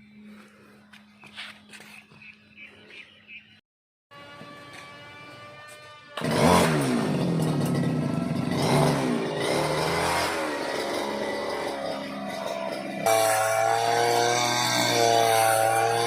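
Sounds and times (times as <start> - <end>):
motorcycle engine revving: 4.2 - 16.0.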